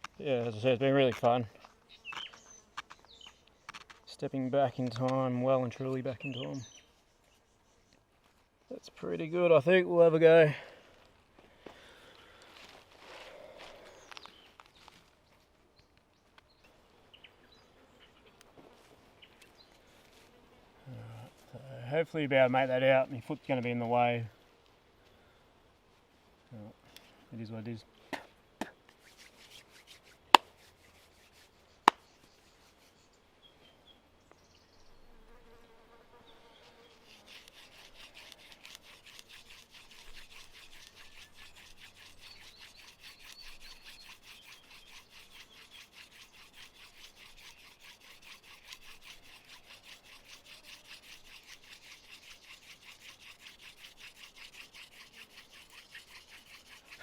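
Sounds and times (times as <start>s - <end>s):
wood-on-wood scratching of fire drill: 36.8s - 57.0s.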